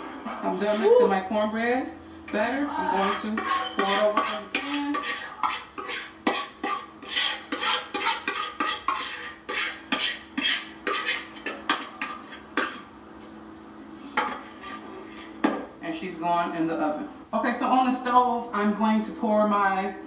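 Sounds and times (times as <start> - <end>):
utensil scraping a mixing bowl: 2.3 - 12.9, 14.2 - 15.7.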